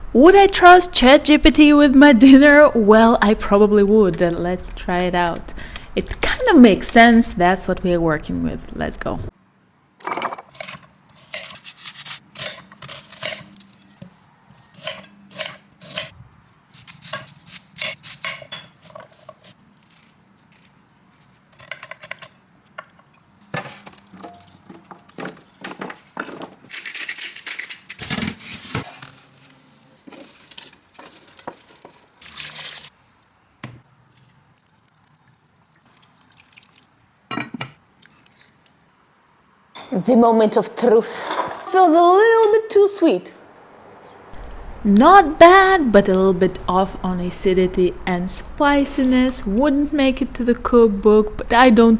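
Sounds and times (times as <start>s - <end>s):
dishes and pans clinking: 10.0s - 10.8s, 23.5s - 27.9s, 37.3s - 37.8s.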